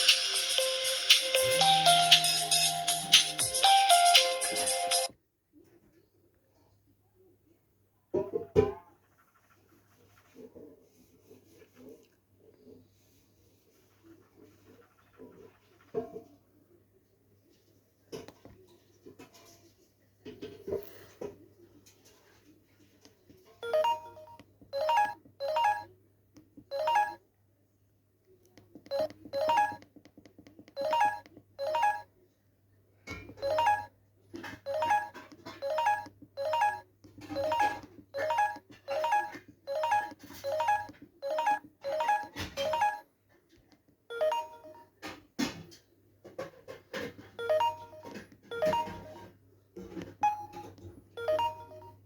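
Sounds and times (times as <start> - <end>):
phone ringtone melody: 0.0 - 5.1, 23.6 - 25.9, 26.7 - 27.2, 28.9 - 29.8, 30.8 - 32.1, 33.4 - 33.9, 34.7 - 43.0, 44.1 - 45.0, 47.4 - 49.3, 51.2 - 52.0.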